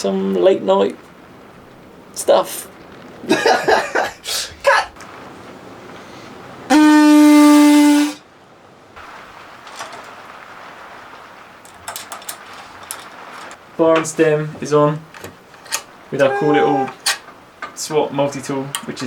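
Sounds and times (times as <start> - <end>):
horn-like toot: 6.7 - 8.2, 16.2 - 17.0.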